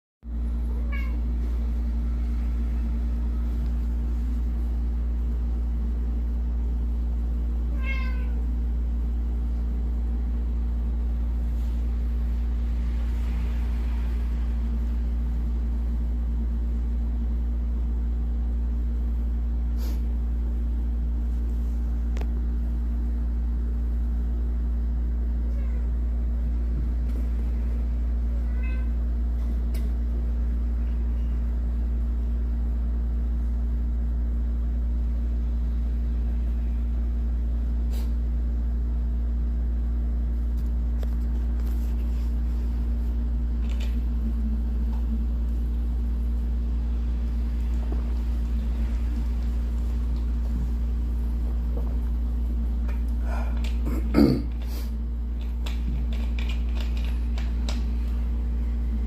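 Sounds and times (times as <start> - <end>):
loud low hum: 0.2 - 55.5
cat meowing: 0.7 - 1.3, 7.7 - 8.5, 28.3 - 29.0.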